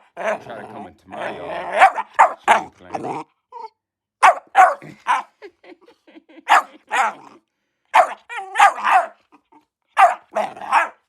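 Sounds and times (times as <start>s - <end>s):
young dog barking: 1.7s - 2.7s, 4.2s - 5.3s, 6.5s - 7.3s, 8.0s - 9.3s, 10.0s - 11.0s.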